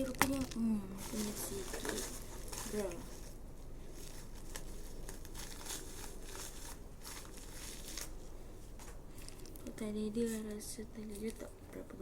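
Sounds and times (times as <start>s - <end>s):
plastic packaging crinkling: 0.0s - 11.5s.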